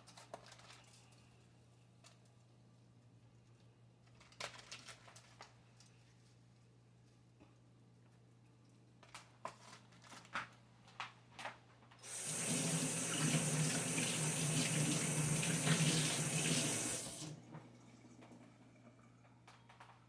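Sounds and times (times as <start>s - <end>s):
tap running into sink: 12.0s - 17.7s.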